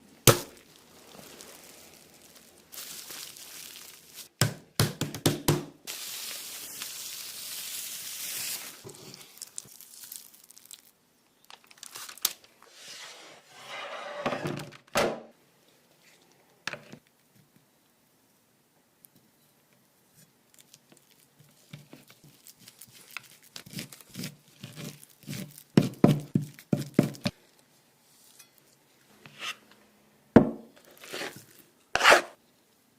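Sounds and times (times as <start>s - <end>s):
food knocks and crinkling: 0.2s - 4.4s, 8.6s - 12.5s, 20.5s - 27.4s.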